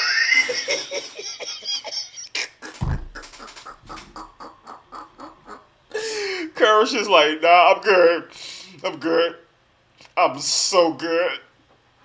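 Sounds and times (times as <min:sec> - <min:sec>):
short evenly spaced cartoon sounds: 0:02.6 - 0:05.7
low thud: 0:02.8 - 0:03.2.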